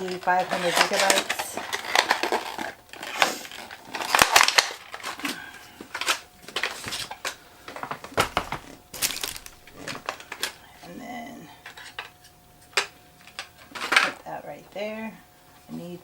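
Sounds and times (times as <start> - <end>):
packaging rustling and crinkling: 0.0 - 10.7.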